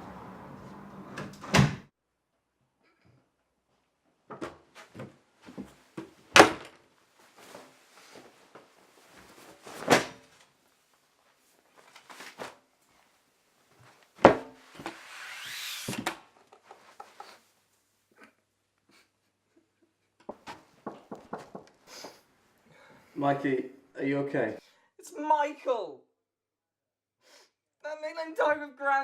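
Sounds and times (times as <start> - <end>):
rustling: 7.0 - 15.9
knocks and thuds: 20.3 - 21.8.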